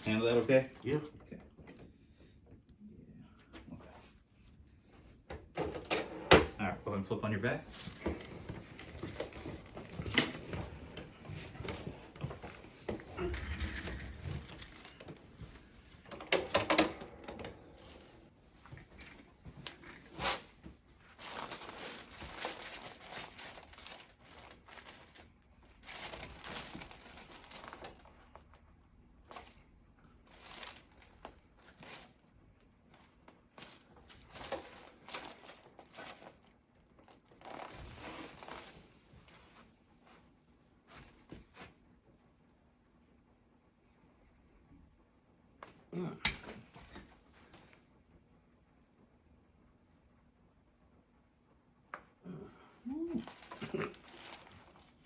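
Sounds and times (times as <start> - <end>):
rustling and crinkling: 7.6 - 42.0, 52.8 - 55.0.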